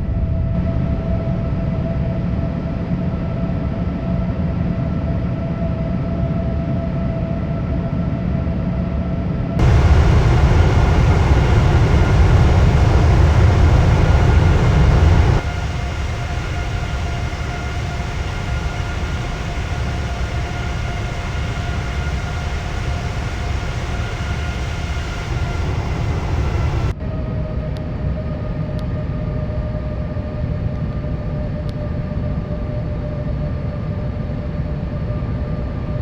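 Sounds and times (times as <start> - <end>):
aircraft engine hum: 9.6 - 27.0
heavy low rumble: 9.6 - 27.0.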